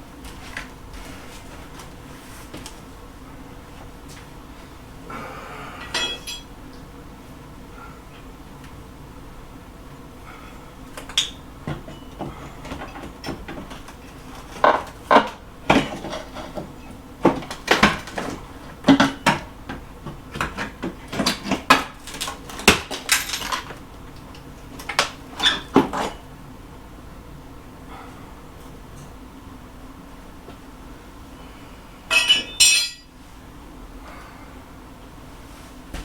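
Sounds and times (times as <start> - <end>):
hand tools clinking on metal: 5.9 - 6.5, 32.1 - 33.1.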